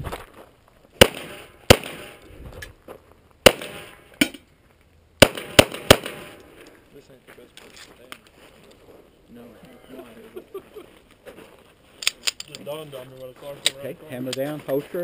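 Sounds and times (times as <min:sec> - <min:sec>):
pistol shots: 0:01.0 - 0:02.2, 0:03.4 - 0:04.4, 0:05.2 - 0:06.4.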